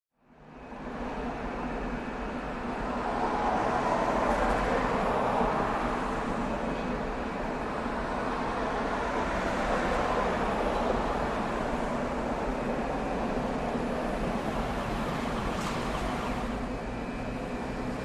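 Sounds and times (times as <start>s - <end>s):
boat engine rumble: 13.7s - 16.9s
rushing water noise: 13.8s - 16.7s.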